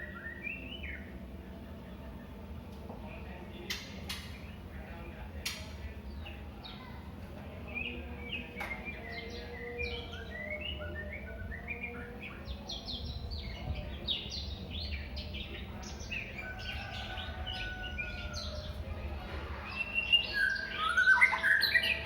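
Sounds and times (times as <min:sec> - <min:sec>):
songbird whistling and chirping: 0:00.0 - 0:01.1, 0:07.8 - 0:18.7, 0:19.6 - 0:22.0.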